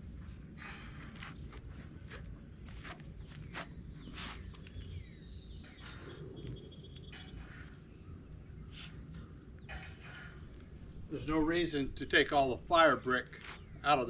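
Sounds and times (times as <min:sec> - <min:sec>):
scuffs and light knocks: 0:00.6 - 0:04.8.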